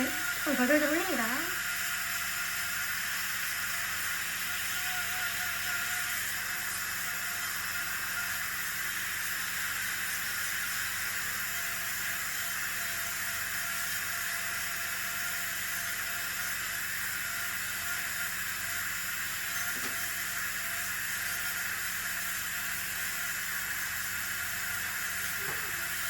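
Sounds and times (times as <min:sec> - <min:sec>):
dental drill whirring: 0:00.0 - 0:26.0.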